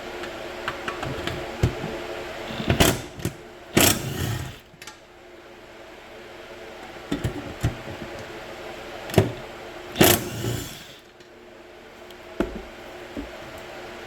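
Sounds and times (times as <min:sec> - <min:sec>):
impact wrench bursts: 0:02.5 - 0:04.7, 0:10.0 - 0:11.0.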